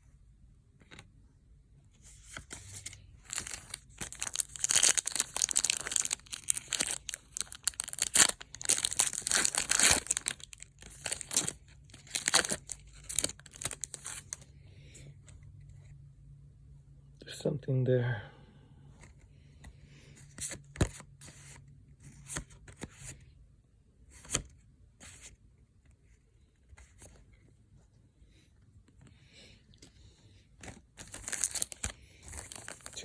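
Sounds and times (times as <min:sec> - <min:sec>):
foil wrapper tearing and crinkling: 0:03.3 - 0:14.4, 0:31.0 - 0:33.0.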